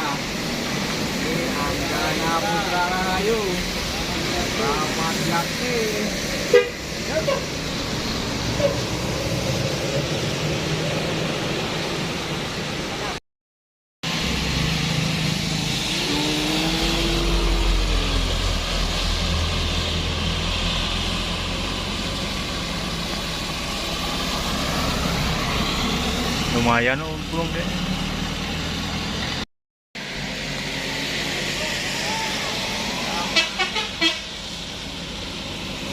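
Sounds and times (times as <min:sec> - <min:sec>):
diesel engine rumbling: 0:00.0 - 0:13.2, 0:14.0 - 0:29.4, 0:30.0 - 0:35.9
tyre and road noise: 0:00.0 - 0:13.2, 0:14.0 - 0:29.4.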